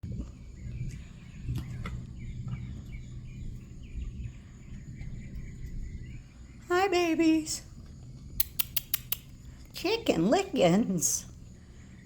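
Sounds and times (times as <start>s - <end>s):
steady low rumble: 0.0s - 8.6s.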